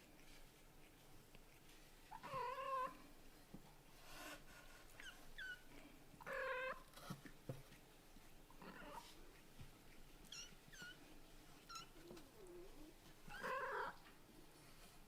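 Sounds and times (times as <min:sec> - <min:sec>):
kittens meowing: 0:13.3 - 0:14.0.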